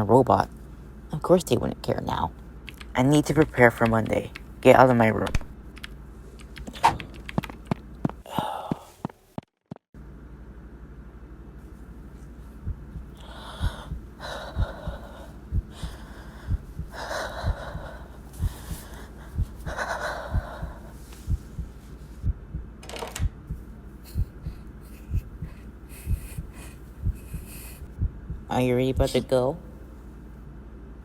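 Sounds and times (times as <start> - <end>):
steady low hum: 0.0 - 9.4, 10.0 - 31.0
heartbeat thuds: 12.5 - 29.2.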